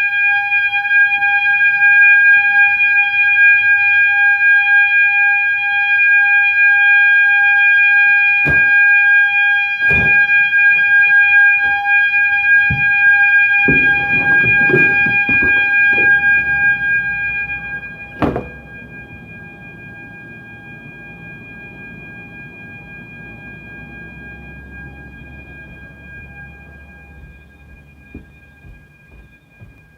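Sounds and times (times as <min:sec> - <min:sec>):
fire alarm horns: 0:00.0 - 0:29.9
knocks: 0:08.4 - 0:09.0, 0:09.8 - 0:17.1, 0:18.0 - 0:18.8, 0:27.2 - 0:29.9
loud thud: 0:08.5 - 0:09.1, 0:09.8 - 0:11.0, 0:11.6 - 0:17.3, 0:18.0 - 0:18.8.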